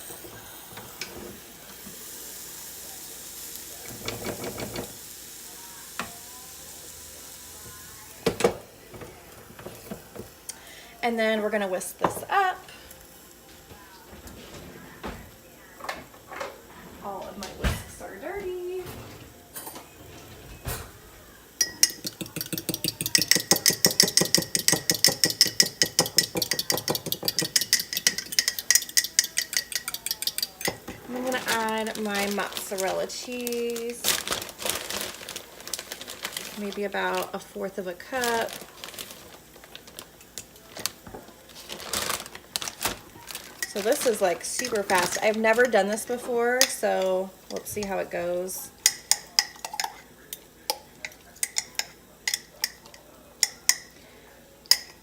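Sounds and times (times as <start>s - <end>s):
onions and mushrooms sizzling: 0.0s - 55.0s
utensil clinking in glass jar: 21.6s - 31.7s.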